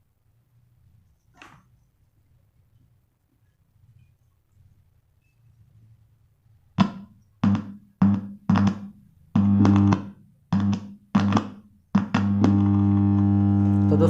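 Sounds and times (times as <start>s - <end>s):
buzzing distortion: 7.4s - 14.0s
heavy low hum: 12.2s - 14.0s.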